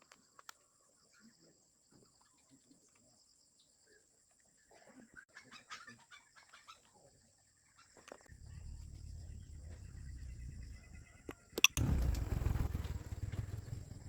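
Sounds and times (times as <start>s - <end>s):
low rumble: 8.3s - 14.0s
steady high whine: 8.3s - 14.0s.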